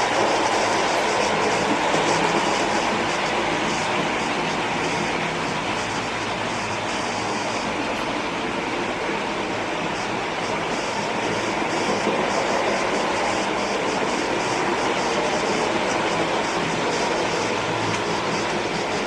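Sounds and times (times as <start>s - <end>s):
high hiss: 0.0s - 19.0s
wheels running on rails: 0.0s - 19.0s.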